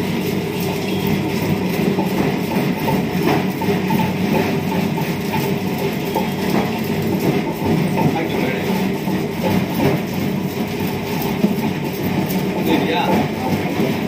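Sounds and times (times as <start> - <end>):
washing machine running: 0.0 - 14.0.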